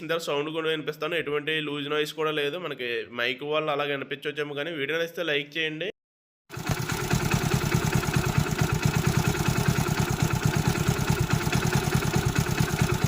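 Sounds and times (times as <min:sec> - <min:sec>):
motorcycle engine idling: 0:06.5 - 0:13.0.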